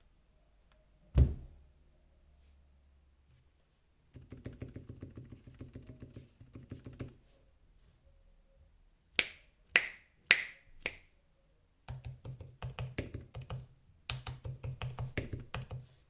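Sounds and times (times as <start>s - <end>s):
loud thump: 1.1s - 1.6s
fast typing on keyboard: 4.2s - 7.2s, 11.9s - 15.8s.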